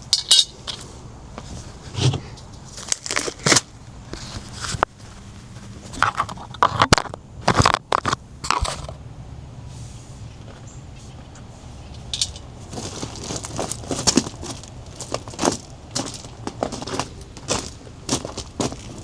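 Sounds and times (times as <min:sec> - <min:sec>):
hard objects clattering: 0:12.0 - 0:16.8.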